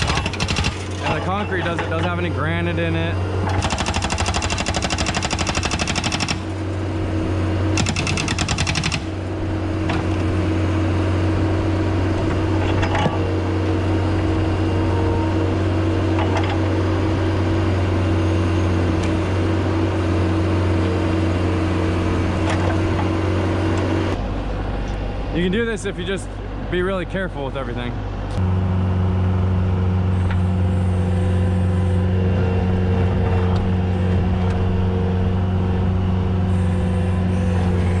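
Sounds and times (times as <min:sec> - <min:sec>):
hydraulic breaker hammering concrete: 0:00.0 - 0:02.2, 0:03.4 - 0:06.6, 0:07.8 - 0:09.2
skid steer engine running: 0:00.0 - 0:38.0.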